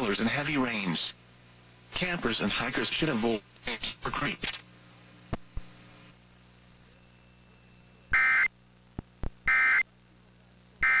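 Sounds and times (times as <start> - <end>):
harsh digital buzzing bursts: 8.1 - 8.5, 9.4 - 9.8.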